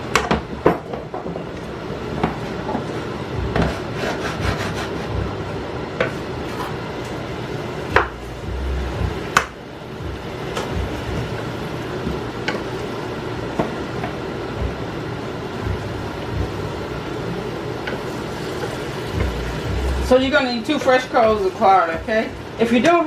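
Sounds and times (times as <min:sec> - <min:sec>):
low background hum: 0:00.0 - 0:23.0
utensil scraping in frying pan: 0:02.4 - 0:05.2.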